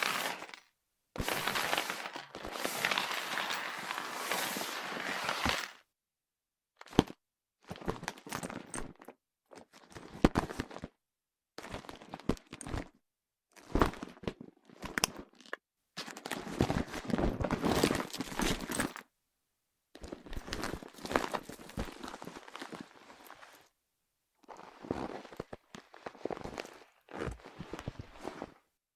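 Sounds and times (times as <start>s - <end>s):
handbag rustling: 0.0s - 0.6s, 1.2s - 5.8s.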